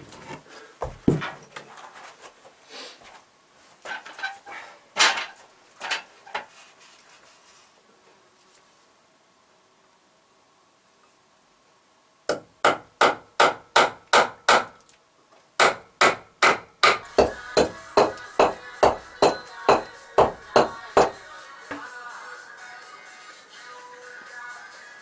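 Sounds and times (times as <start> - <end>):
hammer driving nails into wood: 12.3 - 14.8, 15.6 - 21.2.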